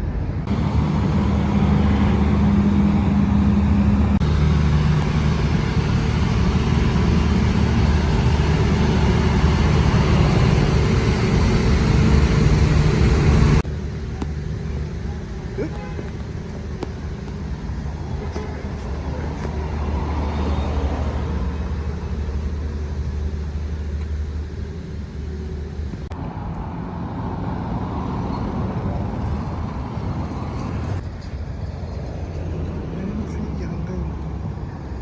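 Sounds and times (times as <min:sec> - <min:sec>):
road traffic rumble: 0:00.0 - 0:35.0.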